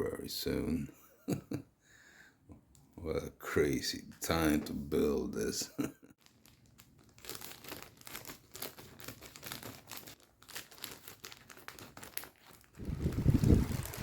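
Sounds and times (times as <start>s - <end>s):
plastic packaging crinkling: 6.2s - 14.0s.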